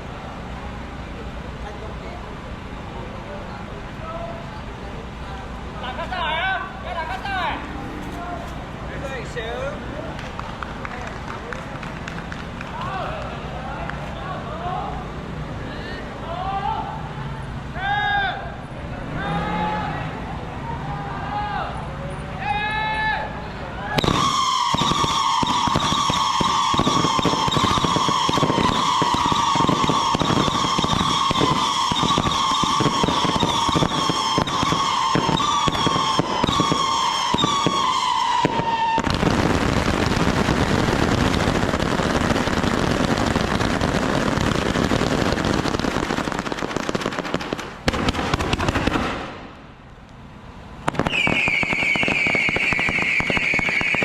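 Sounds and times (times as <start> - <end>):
fireworks crackling bangs: 0.0 - 15.3, 23.9 - 50.0, 50.8 - 54.0
fireworks whistling: 23.9 - 49.7, 50.8 - 54.0.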